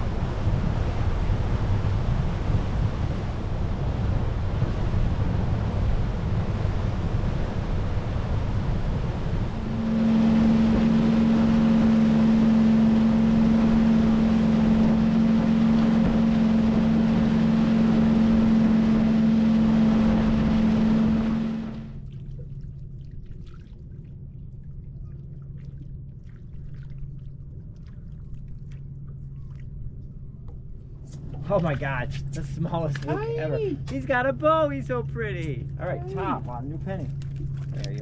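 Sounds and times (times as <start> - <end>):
wind buffeting microphone: 0.0 - 21.7
water rushing past hull: 0.0 - 30.3
boat engine running: 0.0 - 38.0.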